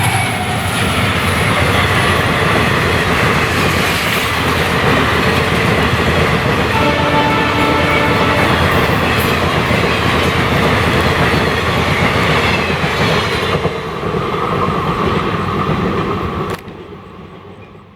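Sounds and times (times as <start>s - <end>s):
train wheels clattering over rail joints: 0.5s - 16.9s
train horn: 6.5s - 10.5s.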